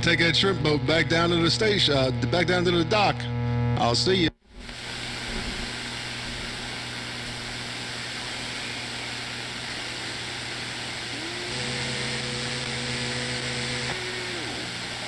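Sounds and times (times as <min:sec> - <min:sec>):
radio static hiss: 0:03.8 - 0:15.0.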